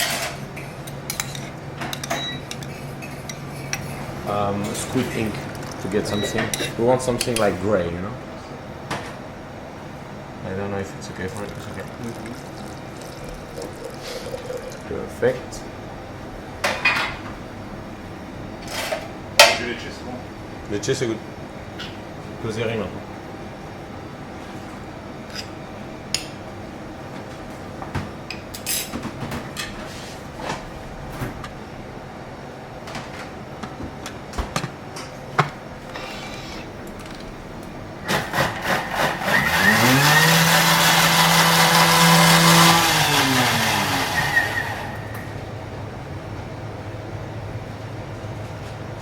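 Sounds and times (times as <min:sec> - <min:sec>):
electric blender running: 0:38.0 - 0:45.2.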